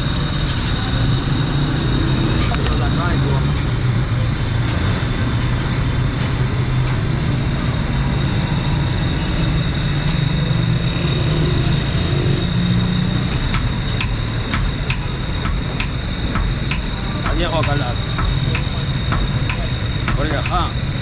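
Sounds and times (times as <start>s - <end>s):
motor humming and whining: 0.0s - 21.0s
sharp taps: 13.3s - 20.7s.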